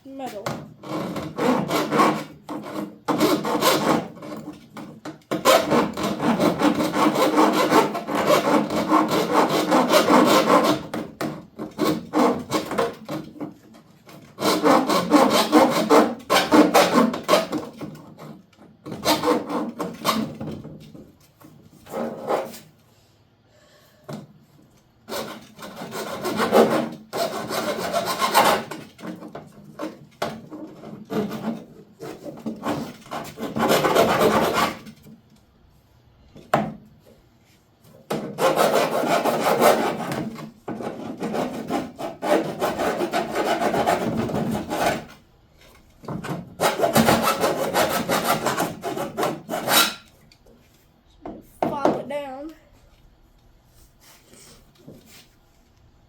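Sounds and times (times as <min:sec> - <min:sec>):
file rasping on metal: 0:00.5 - 0:20.4, 0:25.1 - 0:35.0, 0:38.1 - 0:45.2, 0:46.2 - 0:50.1.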